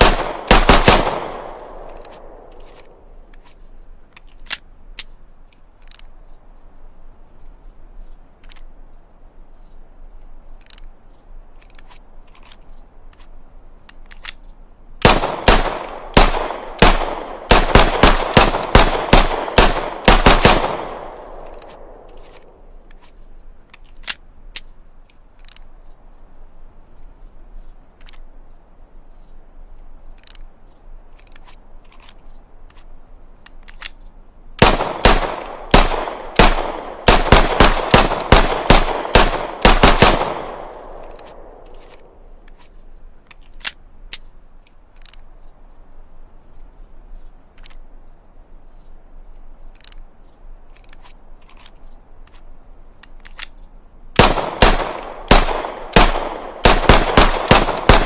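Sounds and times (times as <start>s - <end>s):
pistol shots with echo: 0.0s - 2.6s, 15.0s - 22.1s, 34.6s - 41.7s, 54.2s - 58.0s.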